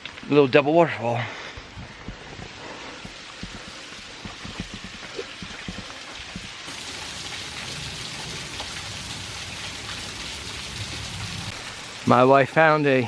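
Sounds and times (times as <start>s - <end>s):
waterfall hissing: 6.0s - 12.7s.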